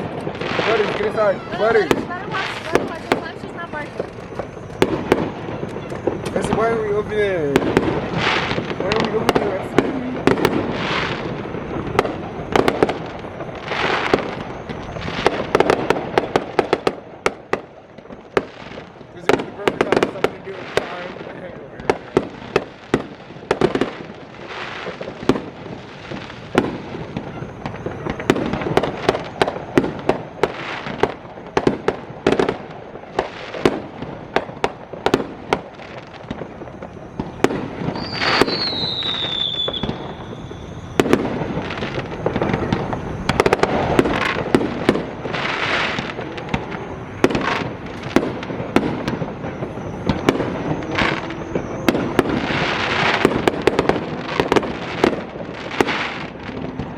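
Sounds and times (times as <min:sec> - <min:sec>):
fireworks bangs and crackling: 0:00.0 - 0:56.9
firework whistle falling in pitch: 0:26.4 - 0:30.6, 0:36.0 - 0:56.9.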